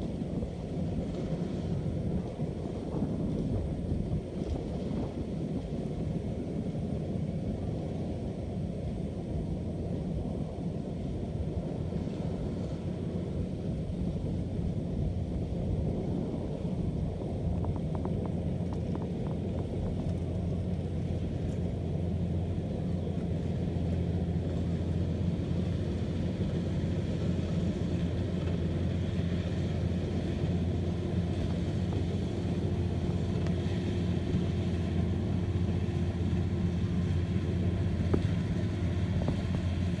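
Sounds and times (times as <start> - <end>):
diesel engine droning: 0.0 - 40.0.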